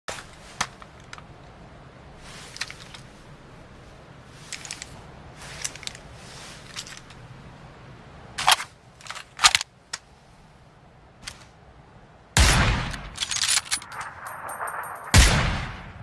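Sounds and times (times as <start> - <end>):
rifle bolt clicking and clacking: 13.2 - 15.1.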